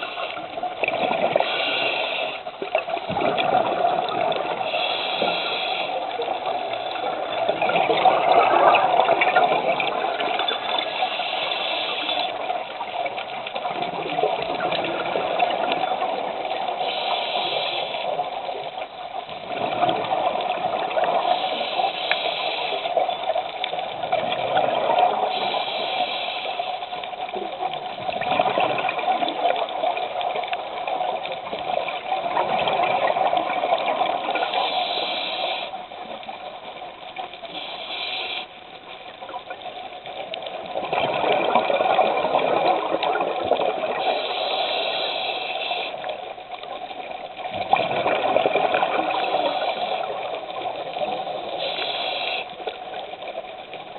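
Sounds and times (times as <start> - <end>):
regulator hiss on inhale: 0.0 - 0.6, 1.3 - 2.8, 4.4 - 7.3, 10.2 - 13.4, 16.0 - 19.0, 20.4 - 23.8, 25.1 - 27.3, 34.2 - 36.3, 37.2 - 39.3, 43.9 - 47.0, 49.0 - 53.2
bubbles rushing on exhale: 2.6 - 4.7, 6.3 - 10.4, 13.6 - 16.5, 19.4 - 21.3, 27.5 - 30.3, 40.5 - 44.1, 47.5 - 51.6.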